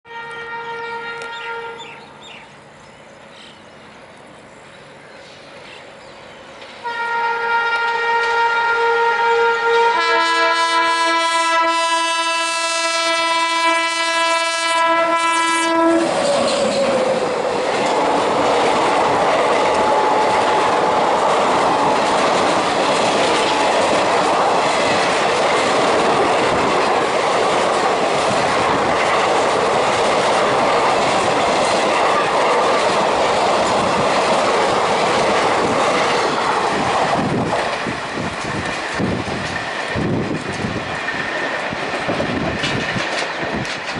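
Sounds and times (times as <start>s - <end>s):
locomotive twin-tone horn: 0.1s - 2.0s, 6.8s - 17.5s
rush of passing train: 0.1s - 43.9s.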